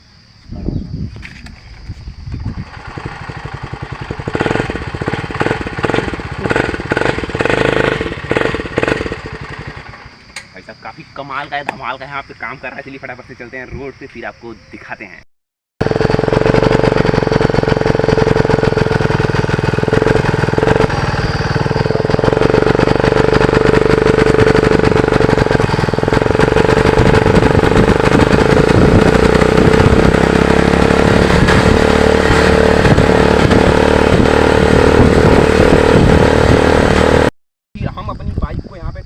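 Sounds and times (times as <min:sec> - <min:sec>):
small motorcycle engine running: 0:01.3 - 0:10.4, 0:15.8 - 0:37.3.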